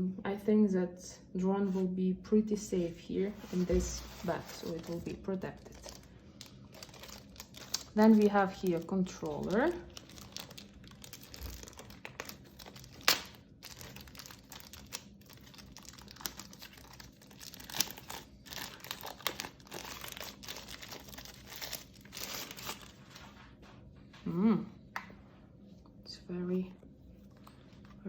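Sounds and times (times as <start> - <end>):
packaging crinkling and rustling: 3.4 - 23.6
packaging clicks: 5.5 - 22.8.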